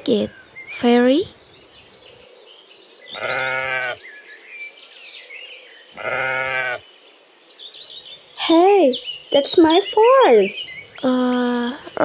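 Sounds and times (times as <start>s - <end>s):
parrot imitating goat bleats: 3.1s - 4.0s, 6.0s - 6.8s.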